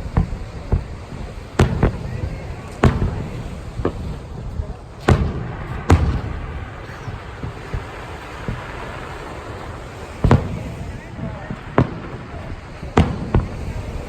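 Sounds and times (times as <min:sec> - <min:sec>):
fireworks exploding: 0:00.0 - 0:14.0.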